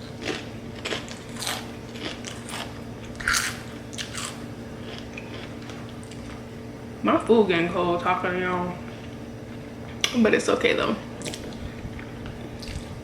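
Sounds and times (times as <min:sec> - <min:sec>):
crunchy food chewing: 0:00.0 - 0:06.5, 0:11.2 - 0:13.0.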